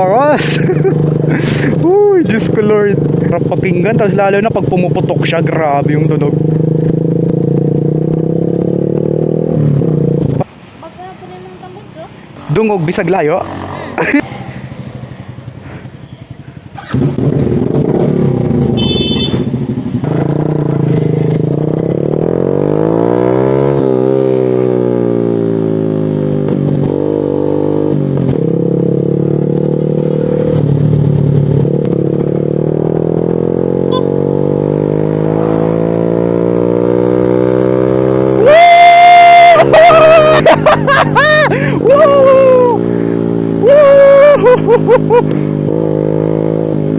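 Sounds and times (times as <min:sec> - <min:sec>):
motorcycle engine revving: 0:00.0 - 0:10.5, 0:12.4 - 0:46.9
loud high-pitched tone: 0:33.9 - 0:34.2.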